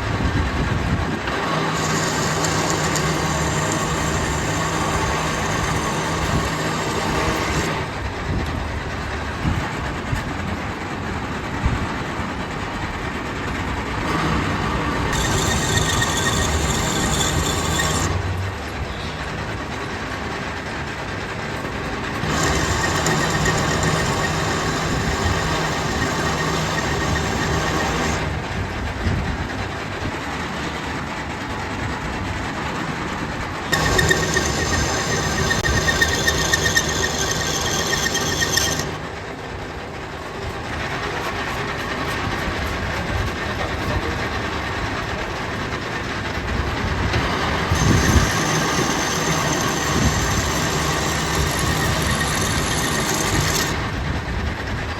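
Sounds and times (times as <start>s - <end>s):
metal lathe running: 0.0s - 29.1s, 32.6s - 54.7s
harsh grinding of lathe cutting: 1.1s - 8.0s, 13.9s - 18.6s, 21.9s - 28.5s, 33.6s - 39.2s, 47.1s - 53.9s.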